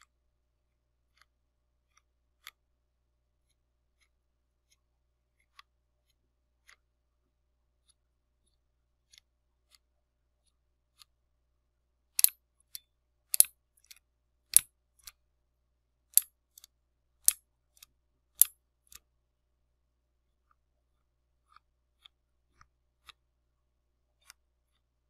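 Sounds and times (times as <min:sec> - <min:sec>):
sharp crisp clicks or snips: 0:13.3 - 0:13.5.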